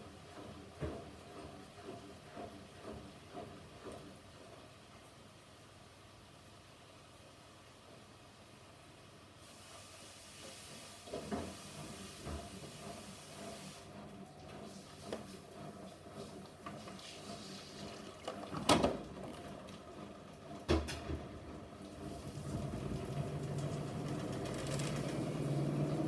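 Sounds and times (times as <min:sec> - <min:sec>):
washing machine hum: 0:00.0 - 0:26.0
washing machine knocks and thuds: 0:20.7 - 0:21.4.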